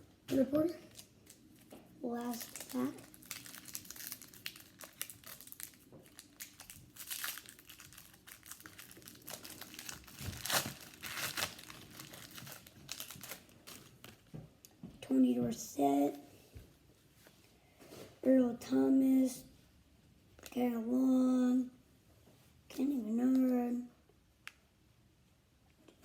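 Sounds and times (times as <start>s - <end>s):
card pack wrapper crinkling: 0.9s - 14.3s.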